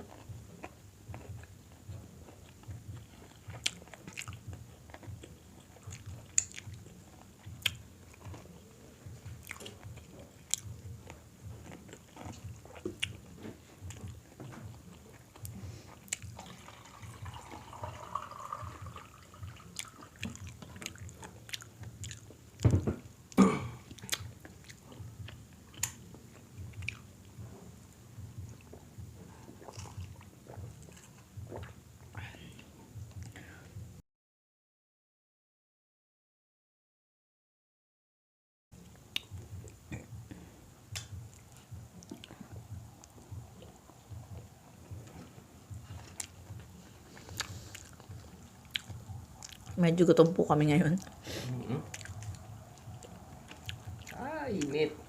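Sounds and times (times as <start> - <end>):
chewing crispy food: 0.0 - 22.7, 23.9 - 27.4, 28.4 - 33.4, 41.0 - 49.8, 51.0 - 54.9.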